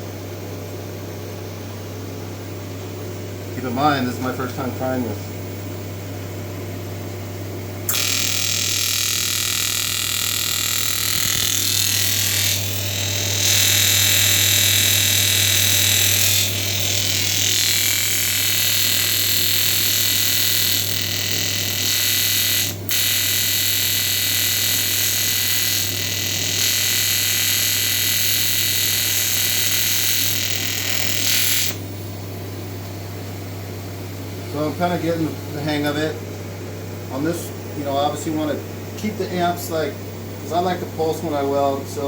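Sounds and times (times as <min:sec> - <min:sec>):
welding arc buzzing and hissing: 0:07.9 - 0:32.2.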